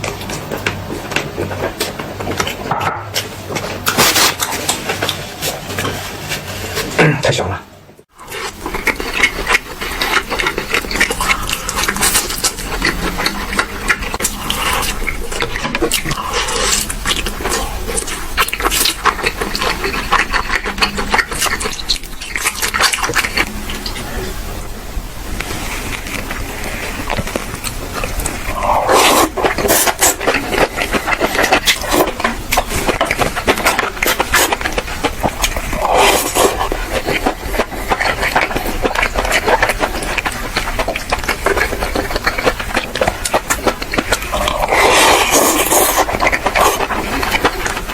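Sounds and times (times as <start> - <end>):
crunchy chewing: 0.0 - 7.0, 8.1 - 47.9.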